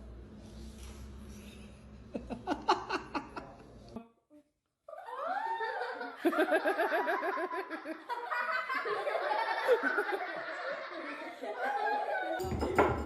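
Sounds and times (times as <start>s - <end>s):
people laughing hard: 2.1s - 3.7s, 4.9s - 12.8s.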